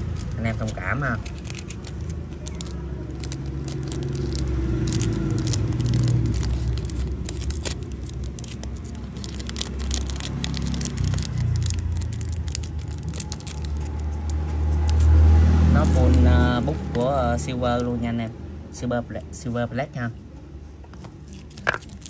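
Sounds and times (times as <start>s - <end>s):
steady low rumble: 0.0s - 17.6s.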